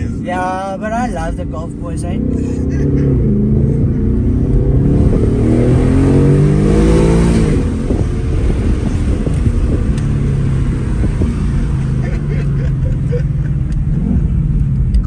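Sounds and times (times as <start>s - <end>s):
car engine accelerating hard: 0.0s - 15.0s
exhaust pops: 3.2s - 15.0s.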